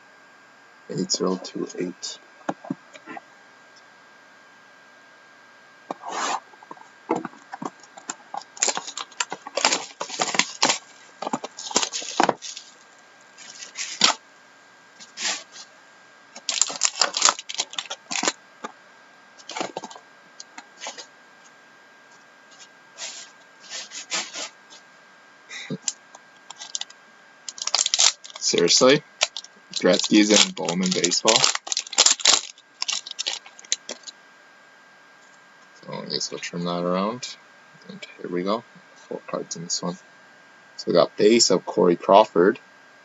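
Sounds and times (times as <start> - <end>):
faint high hum: 0.0 - 43.0
plastic wrap crackling: 7.8 - 14.2, 16.4 - 18.4, 19.4 - 21.0, 25.7 - 34.2.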